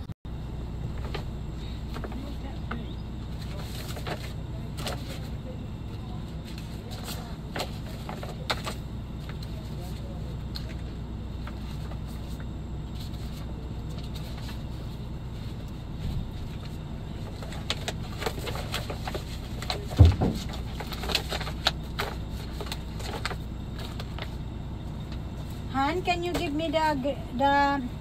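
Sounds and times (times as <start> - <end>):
steady low hum: 0.0 - 28.0
loud thump: 20.0 - 20.4.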